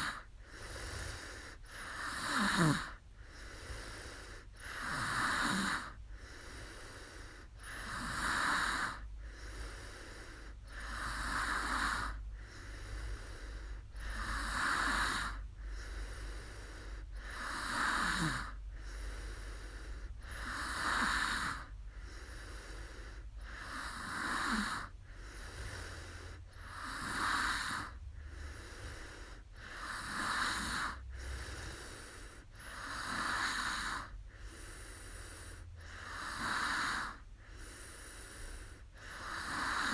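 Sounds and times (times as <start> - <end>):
woman breathing heavily and snoring: 0.0 - 39.9.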